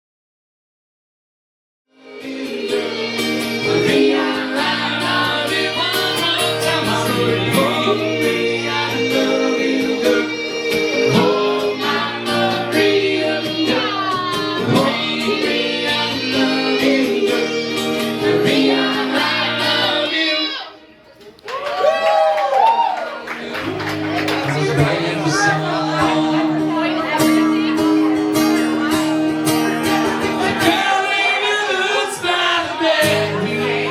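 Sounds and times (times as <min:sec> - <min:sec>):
guitar: 0:01.9 - 0:33.9
person singing: 0:02.0 - 0:20.8, 0:23.4 - 0:28.9, 0:29.7 - 0:33.9
sustained bass line: 0:23.6 - 0:28.2.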